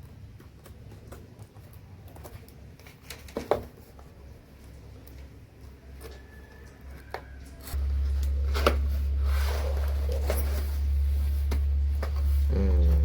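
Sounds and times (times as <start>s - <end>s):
steady low hum: 7.8s - 13.0s.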